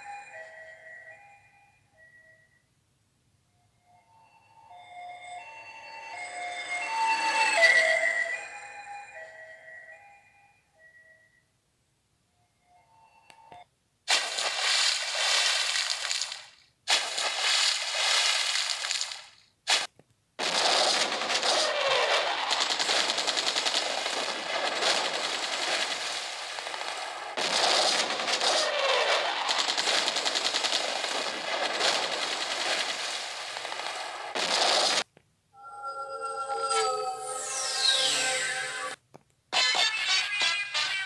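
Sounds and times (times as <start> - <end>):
harsh crackling noise effect: 14.2 - 39.0.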